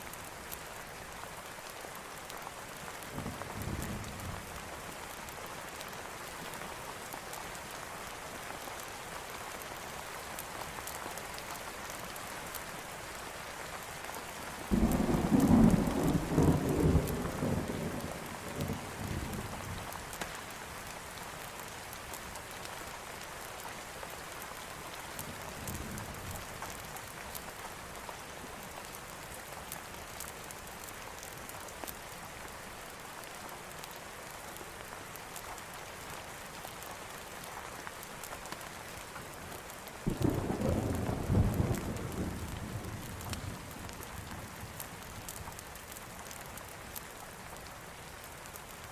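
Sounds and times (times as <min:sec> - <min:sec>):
steady rain falling: 0:00.0 - 0:48.9
faint low thunder rumble: 0:14.7 - 0:20.0, 0:40.1 - 0:45.6.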